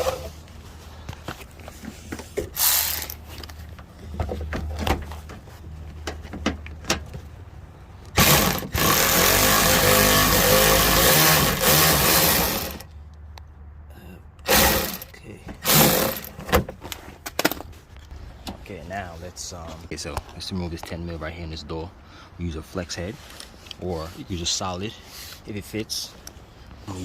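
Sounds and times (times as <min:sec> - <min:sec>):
cordless power tool running: 0:08.2 - 0:12.9, 0:14.5 - 0:15.0, 0:15.6 - 0:16.3.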